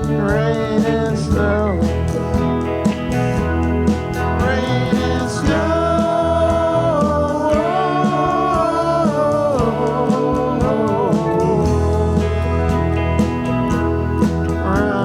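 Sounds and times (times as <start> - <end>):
bass guitar: 0.0 - 15.0
drums: 0.0 - 15.0
person singing sliding notes: 4.4 - 12.8.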